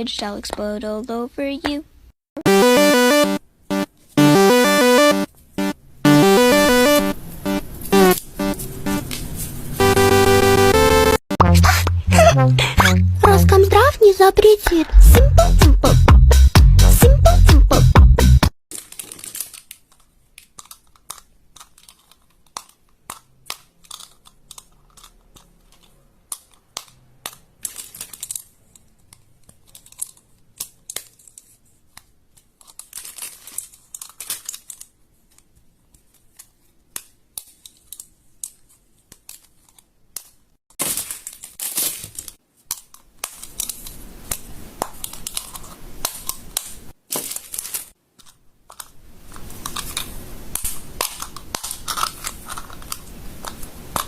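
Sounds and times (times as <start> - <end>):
rustling: 18.7 - 39.9, 40.8 - 54.0
plastic crinkling: 18.7 - 54.0
plastic fidget toys clicking: 19.1 - 40.4, 42.6 - 46.8, 48.2 - 54.0.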